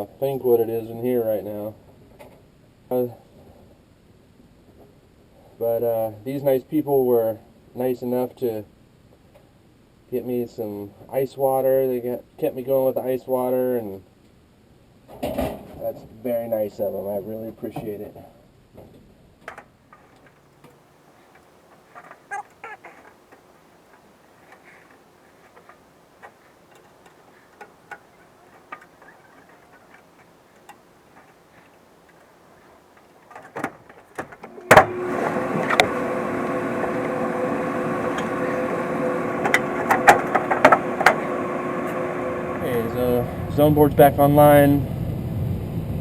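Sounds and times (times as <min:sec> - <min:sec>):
air-conditioning system whir and hum: 0:19.6 - 0:46.0.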